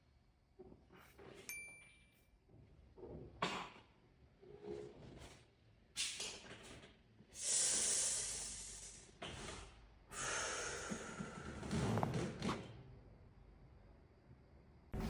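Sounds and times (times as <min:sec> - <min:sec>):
person breathing: 0:07.4 - 0:09.1, 0:10.1 - 0:11.7.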